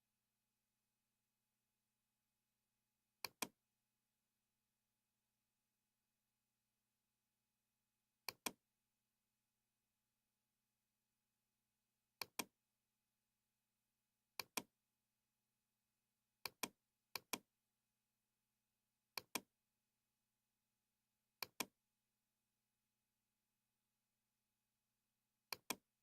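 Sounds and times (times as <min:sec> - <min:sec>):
computer mouse button clicks: 0:03.2 - 0:03.6, 0:08.2 - 0:08.6, 0:12.2 - 0:12.5, 0:14.4 - 0:14.7, 0:16.4 - 0:17.4, 0:19.2 - 0:19.5, 0:21.4 - 0:21.7, 0:25.5 - 0:25.8.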